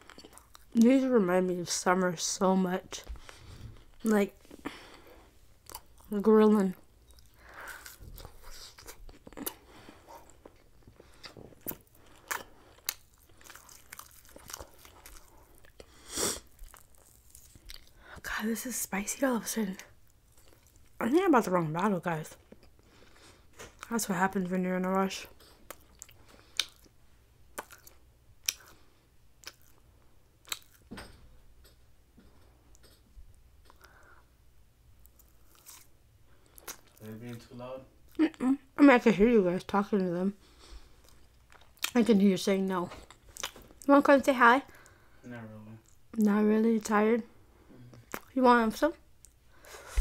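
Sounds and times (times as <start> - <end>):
chewing with wet mouth smacks: 0.0 - 0.8, 7.0 - 15.9, 16.5 - 18.0, 20.3 - 21.0, 25.3 - 29.8, 30.4 - 30.9, 35.0 - 37.4, 43.0 - 43.9, 47.9 - 48.4
faint room hum: 0.0 - 50.0
chewing and biting meat: 7.0 - 15.8, 27.6 - 28.8
wet mouth clicks: 25.6 - 26.9, 27.6 - 28.7, 29.4 - 29.8, 47.9 - 48.3.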